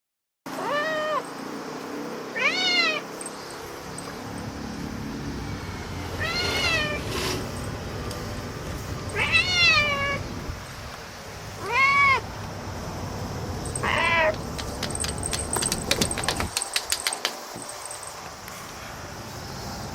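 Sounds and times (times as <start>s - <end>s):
cat meowing: 0.5s - 1.3s, 2.4s - 3.2s, 6.0s - 7.2s, 9.1s - 10.3s, 11.6s - 12.3s, 13.7s - 14.5s.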